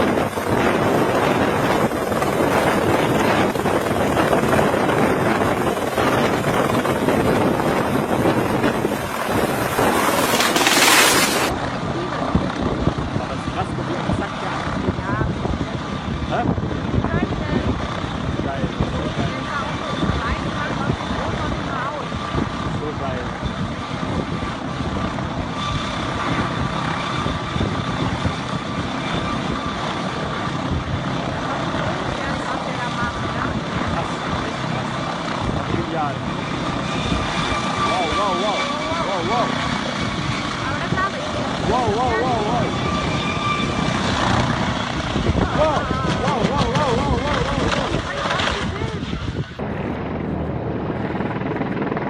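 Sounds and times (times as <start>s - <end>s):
helicopter engine and rotor: 0.0s - 52.0s
wind buffeting microphone: 0.0s - 52.0s
rush of hiss: 9.3s - 11.5s.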